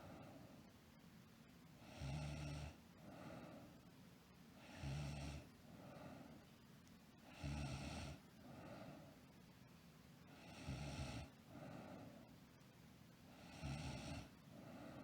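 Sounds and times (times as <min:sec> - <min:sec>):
soft breath: 0:00.0 - 0:00.8, 0:03.0 - 0:04.0, 0:05.6 - 0:06.6, 0:08.4 - 0:09.4, 0:10.2 - 0:12.5, 0:13.2 - 0:15.0
girl snoring: 0:13.4 - 0:14.3.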